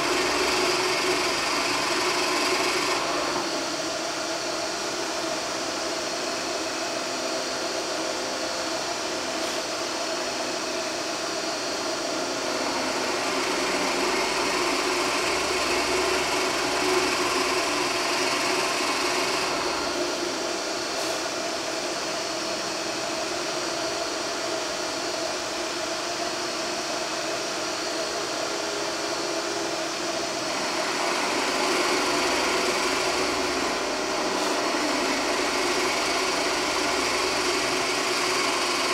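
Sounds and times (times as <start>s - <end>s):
drill bit cutting wood: 0.0s - 3.7s, 12.4s - 20.2s, 30.4s - 38.9s
drill press motor running: 0.0s - 38.9s.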